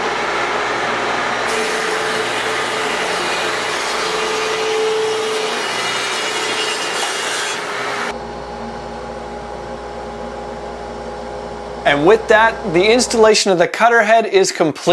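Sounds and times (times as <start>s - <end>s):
thickness planer cutting wood: 1.5s - 8.1s.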